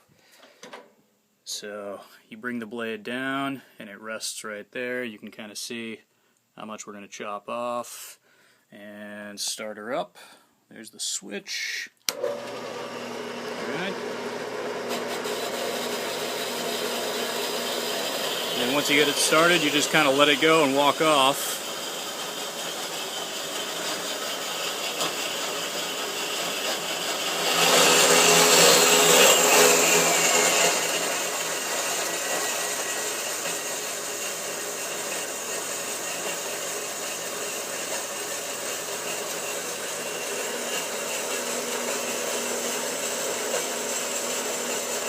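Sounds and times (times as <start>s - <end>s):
bandsaw cutting steel: 12.1s - 45.0s.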